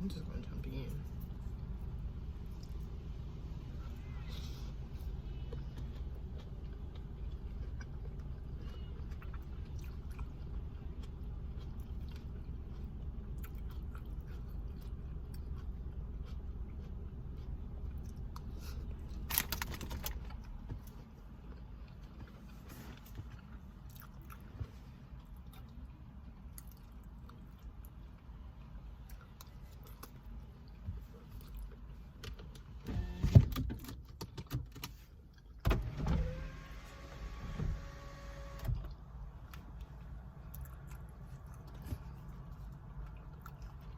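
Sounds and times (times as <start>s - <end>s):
steady low rumble: 0.0s - 32.1s
person chewing and crunching: 3.8s - 32.0s, 39.4s - 43.9s.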